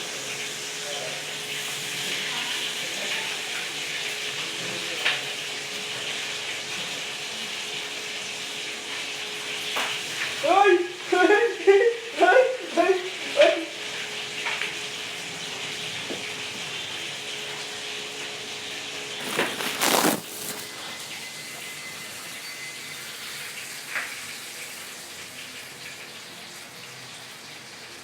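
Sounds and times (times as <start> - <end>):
hot oil sizzling: 5.2 - 11.2.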